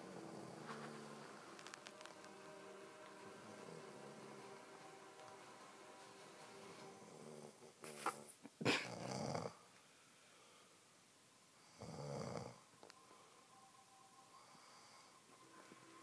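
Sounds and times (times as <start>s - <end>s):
loud rasping snores: 8.8s - 9.6s, 11.7s - 12.6s.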